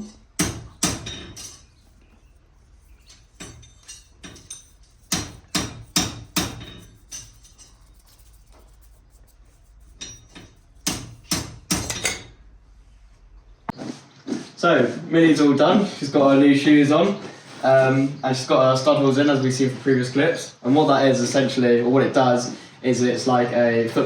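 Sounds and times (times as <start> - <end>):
hammer striking metal: 0.0 - 1.8, 3.1 - 7.6, 10.0 - 12.4.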